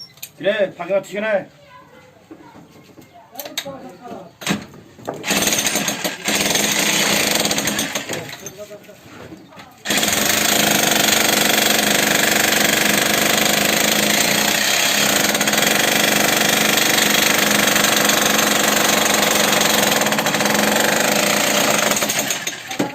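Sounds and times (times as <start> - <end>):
demolition hammer breaking concrete: 5.2 - 8.4, 9.9 - 22.9.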